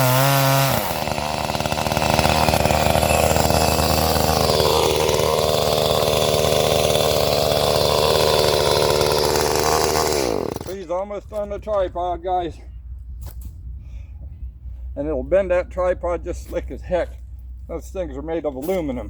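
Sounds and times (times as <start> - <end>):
chainsaw cutting trees: 0.0 - 10.9.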